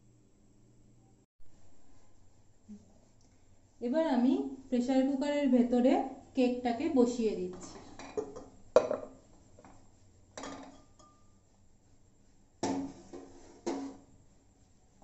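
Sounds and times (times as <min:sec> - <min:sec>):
metal cookware clanking: 0:10.4 - 0:11.3.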